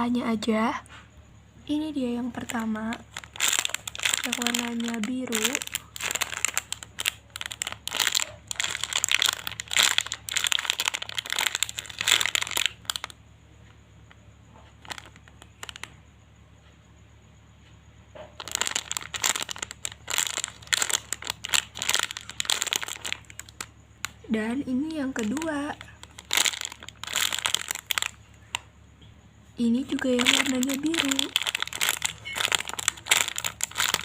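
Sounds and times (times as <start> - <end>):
plastic packaging crinkling: 2.2 - 13.2, 14.8 - 15.9, 18.4 - 24.2, 25.1 - 28.6, 29.7 - 34.0.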